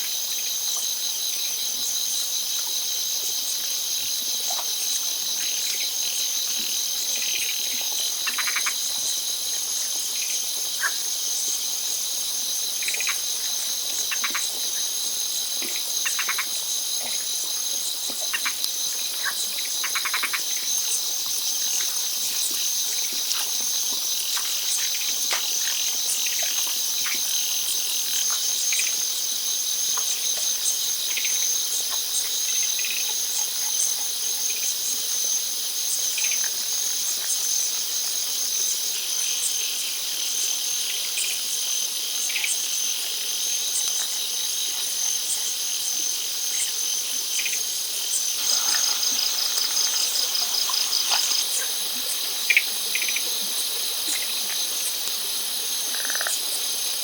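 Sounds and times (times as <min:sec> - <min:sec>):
high-pitched insect chorus: 0:00.0 - 0:57.0
short rattling calls: 0:48.4 - 0:51.8.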